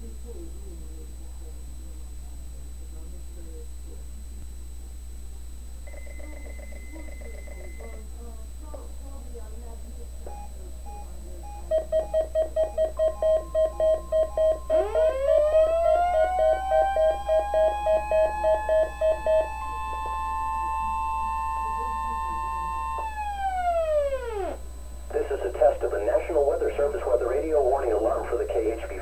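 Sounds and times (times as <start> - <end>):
rapid alert beeping: 5.9 - 8.0, 10.3 - 19.6
steady high tone: 10.3 - 29.0
siren winding up and down: 11.7 - 24.7.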